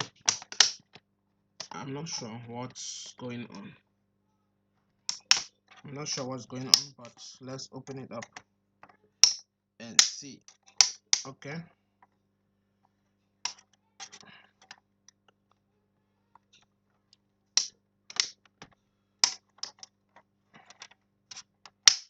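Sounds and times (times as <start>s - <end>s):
plastic clicks and taps: 0.0s - 1.0s, 5.1s - 5.5s, 17.6s - 19.9s
faint low hum: 0.0s - 21.8s.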